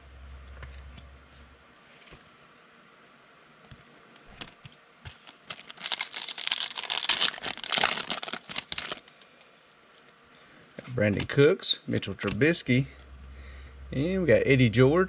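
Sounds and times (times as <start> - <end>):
foil wrapper tearing and crinkling: 5.1 - 9.2.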